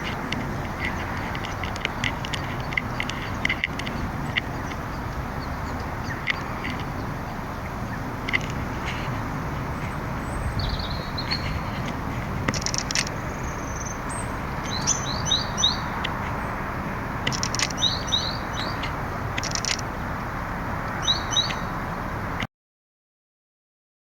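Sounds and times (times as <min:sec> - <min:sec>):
sharp clicks: 0:00.0 - 0:07.0, 0:11.3 - 0:13.2, 0:17.2 - 0:18.0, 0:18.6 - 0:19.9
small birds chirping: 0:00.0 - 0:22.0
steady background rush: 0:00.0 - 0:22.4.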